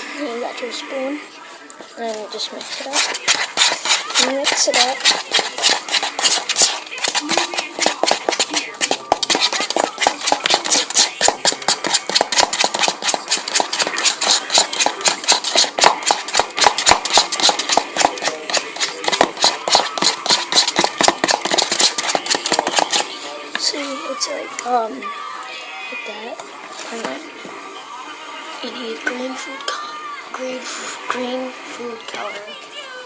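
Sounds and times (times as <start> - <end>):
spoon stirring in a bowl: 2.1 - 23.7.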